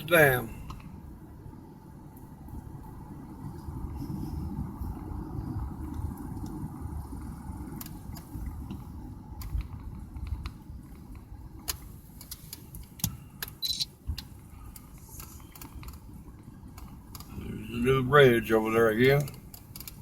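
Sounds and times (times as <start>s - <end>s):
car engine and road rumble: 0.0s - 20.0s
small clicks and rattles: 19.1s - 20.0s.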